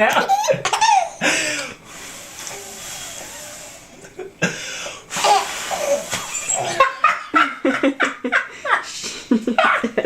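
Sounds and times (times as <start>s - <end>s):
baby laughing: 0.0s - 1.3s, 5.2s - 8.2s
breathy puffs of blowing: 1.2s - 6.6s.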